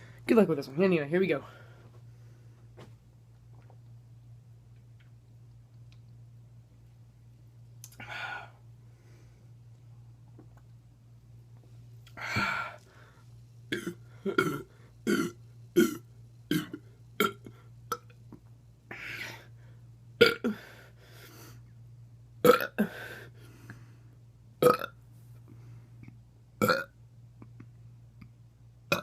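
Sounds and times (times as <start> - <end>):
man burping: 13.7 - 18.0, 20.2 - 20.7, 22.4 - 23.0, 24.6 - 24.9, 26.6 - 26.9.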